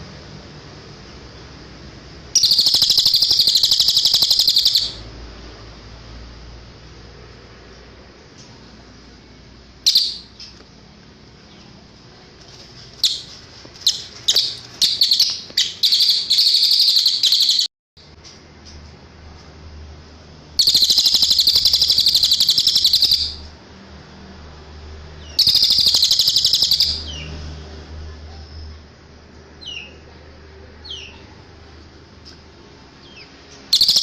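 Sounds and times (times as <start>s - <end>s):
bird chirping and trilling: 2.3s - 5.1s, 9.8s - 10.6s, 13.0s - 17.7s, 20.6s - 23.5s, 25.2s - 27.3s, 33.0s - 34.0s.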